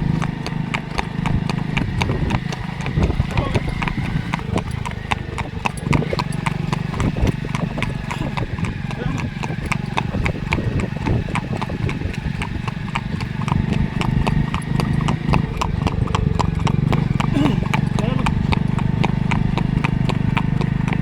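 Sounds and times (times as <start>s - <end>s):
horse hooves clip-clopping: 0.0s - 21.0s.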